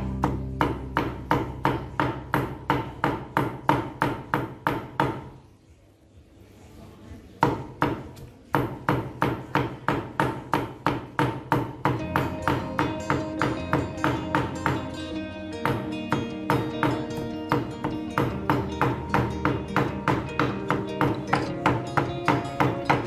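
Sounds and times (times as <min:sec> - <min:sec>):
knife chopping on cutting board: 0:07.4 - 0:14.9.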